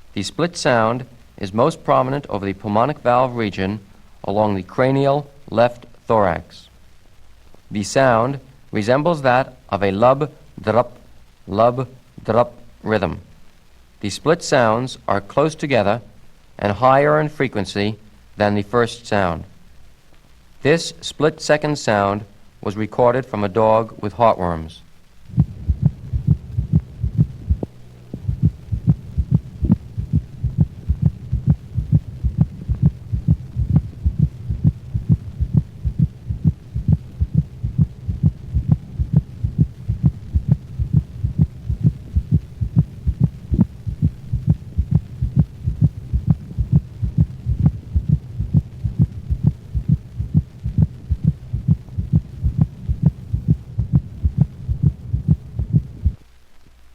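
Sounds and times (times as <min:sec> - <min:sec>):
heartbeat through stethoscope: 0:25.3 - 0:56.2.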